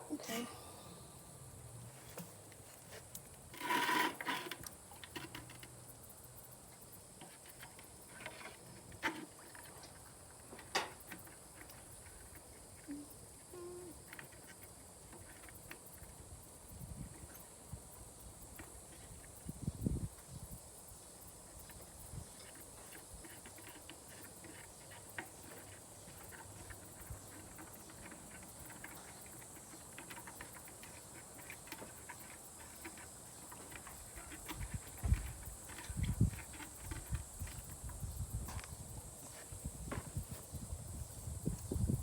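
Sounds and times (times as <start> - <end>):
insect chirring: 3.0 - 42.0.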